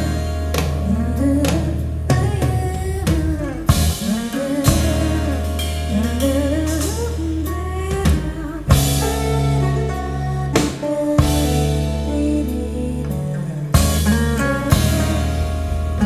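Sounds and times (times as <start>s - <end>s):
band playing instrumental music: 0.0s - 16.0s.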